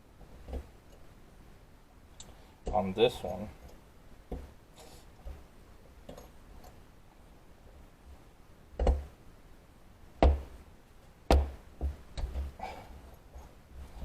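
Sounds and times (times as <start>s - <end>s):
sharp knocks of hard objects: 8.8s - 9.1s, 10.2s - 10.6s, 11.3s - 12.6s.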